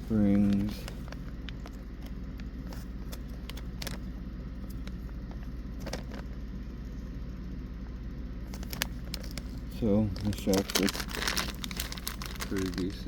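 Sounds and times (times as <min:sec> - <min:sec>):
plastic parts and bags crinkling: 0:00.0 - 0:04.1, 0:05.8 - 0:06.3, 0:08.5 - 0:13.0
steady low hum: 0:00.0 - 0:13.0.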